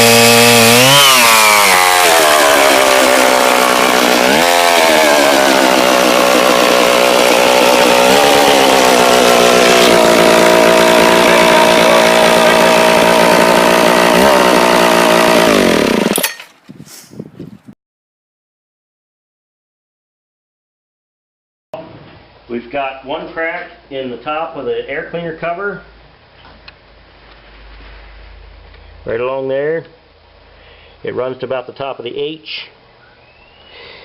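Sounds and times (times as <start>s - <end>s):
chainsaw engine revving: 0.0s - 16.4s.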